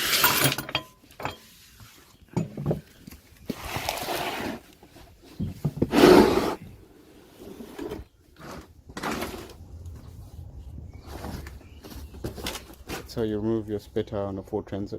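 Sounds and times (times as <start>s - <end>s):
tyre scraping on ground: 2.9s - 10.1s.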